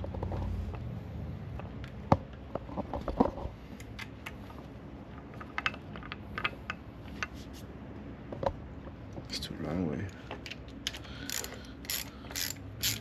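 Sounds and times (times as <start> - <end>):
tools and parts clicking and knocking: 5.1 - 7.3, 10.3 - 13.0.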